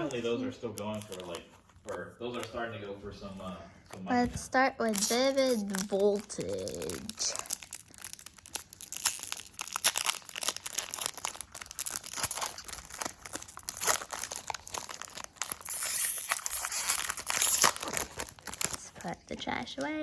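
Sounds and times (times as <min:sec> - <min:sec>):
foil wrapper tearing and crinkling: 0:00.0 - 0:01.5, 0:04.8 - 0:19.2.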